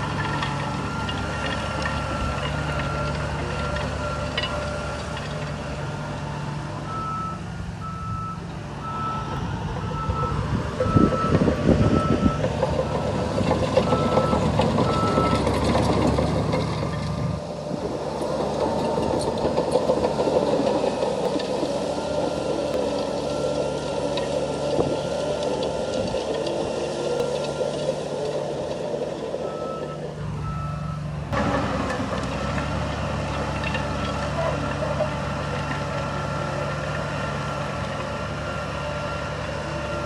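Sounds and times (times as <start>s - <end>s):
machine rattling and rumbling: 0.0s - 6.7s, 9.3s - 29.5s, 31.2s - 39.8s
diesel engine running: 0.0s - 40.0s
reversing alarm beeping: 6.4s - 15.6s, 29.4s - 31.1s.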